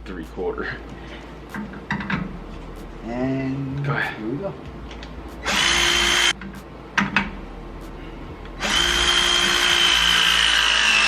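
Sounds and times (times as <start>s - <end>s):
cordless power tool motor whirring: 8.6s - 11.0s.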